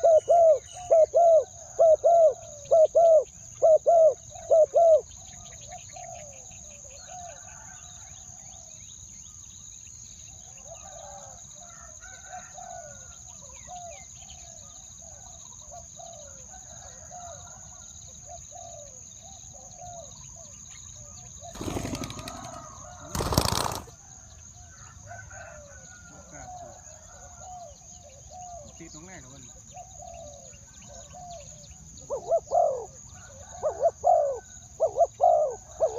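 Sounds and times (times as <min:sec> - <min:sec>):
birds calling low falling notes: 0:21.5 - 0:24.0.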